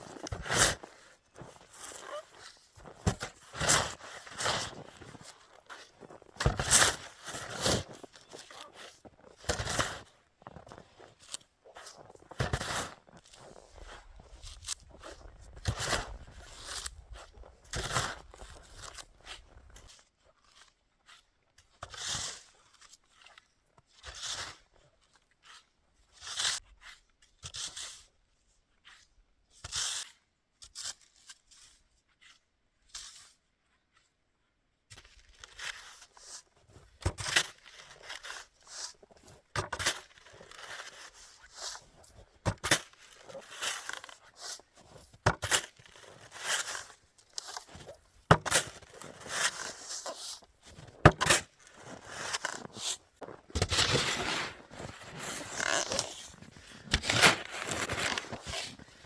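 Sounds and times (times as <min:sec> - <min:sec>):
snow crunching: 0:00.0 - 0:11.0, 0:40.1 - 0:59.0
scraping with sharp clicks: 0:38.2 - 0:59.0.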